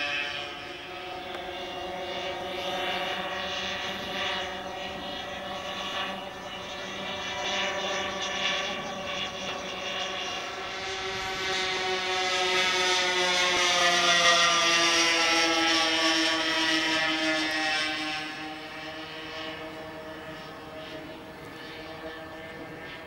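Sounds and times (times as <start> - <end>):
model aircraft engines droning: 0.0 - 23.0.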